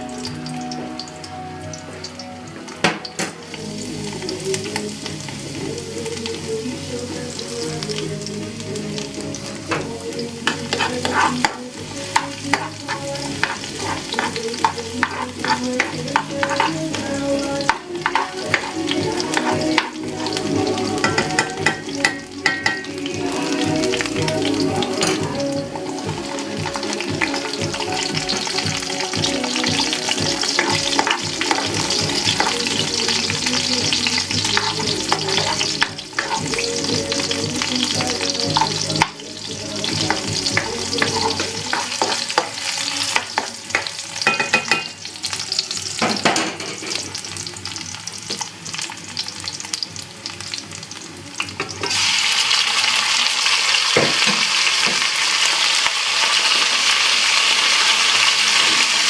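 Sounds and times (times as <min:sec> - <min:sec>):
food sizzling in a pan: 0:00.0 - 0:59.0
utensil scraping a pan: 0:10.4 - 0:20.0, 0:34.4 - 0:36.8, 0:40.0 - 0:43.9.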